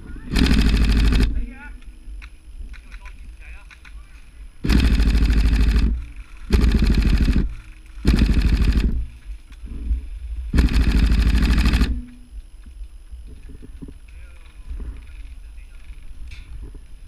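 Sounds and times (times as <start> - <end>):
airsoft gun firing bursts: 0.3 - 1.4, 4.6 - 9.1, 10.6 - 12.1.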